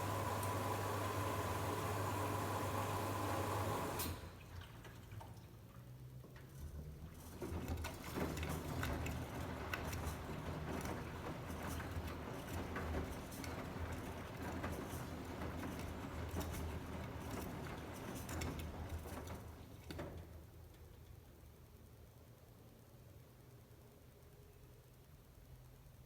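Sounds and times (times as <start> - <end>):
washing machine motor hum: 0.0 - 4.8, 7.2 - 19.8.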